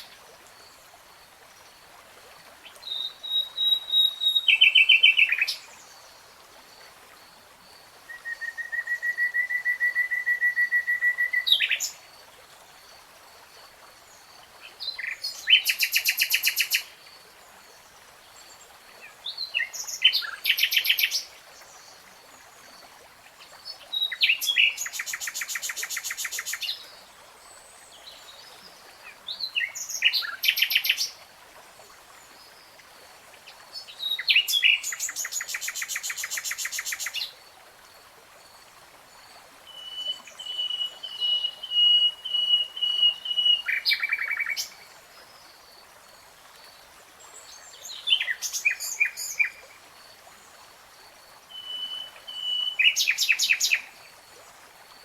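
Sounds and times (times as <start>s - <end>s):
nightingale singing: 2.8s - 5.6s, 39.7s - 44.8s, 47.9s - 49.6s, 51.5s - 53.9s.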